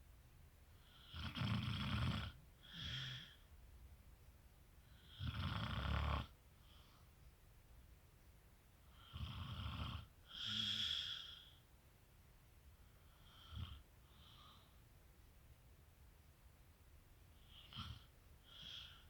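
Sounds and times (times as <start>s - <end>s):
man snoring: 1.0s - 3.3s, 5.2s - 6.3s.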